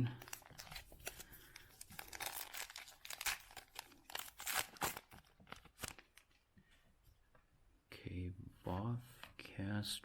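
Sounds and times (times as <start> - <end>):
wrapper crinkling and tearing: 0.0 - 6.4.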